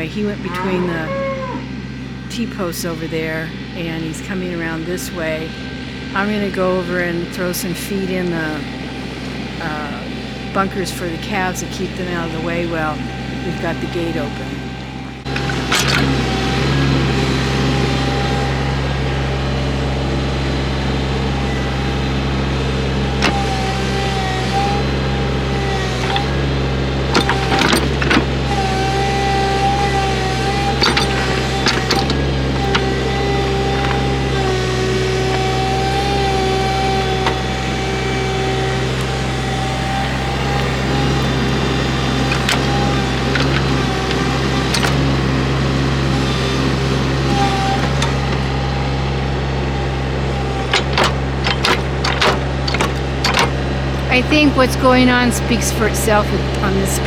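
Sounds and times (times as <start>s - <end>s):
steady whine: 0.0s - 57.0s
utility vehicle engine running: 0.0s - 57.0s
knocks and rattles: 50.7s - 53.6s.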